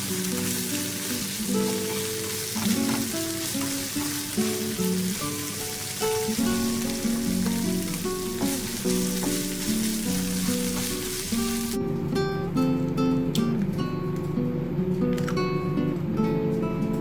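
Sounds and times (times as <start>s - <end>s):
food sizzling in hot pan: 0.0s - 11.8s
plucked string background music: 0.0s - 17.0s
utensil knocking on pan: 7.3s - 11.1s.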